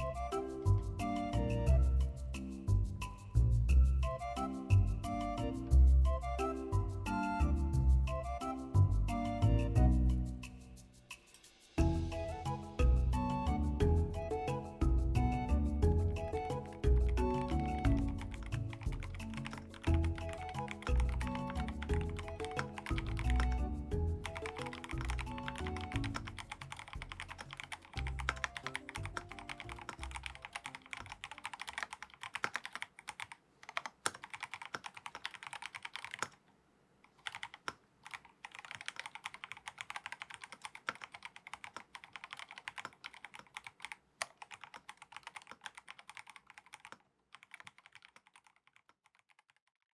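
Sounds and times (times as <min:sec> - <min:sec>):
background music: 0:00.0 - 0:31.4
mechanical keyboard typing: 0:16.3 - 0:36.4, 0:37.1 - 0:49.8.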